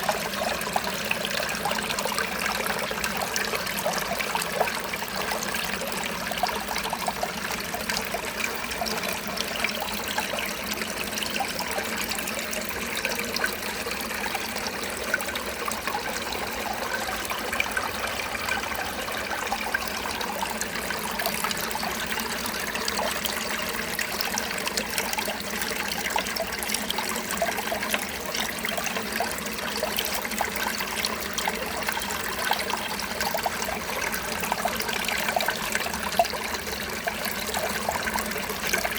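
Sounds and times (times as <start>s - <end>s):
water trickling: 0.0s - 38.9s.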